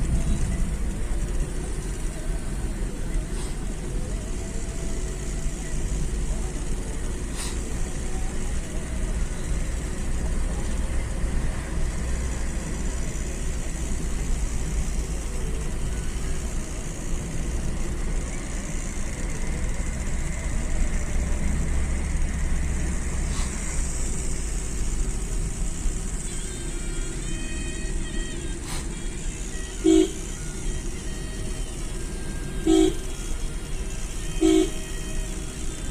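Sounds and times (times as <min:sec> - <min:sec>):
engine and tyre rumble: 0:00.0 - 0:35.9.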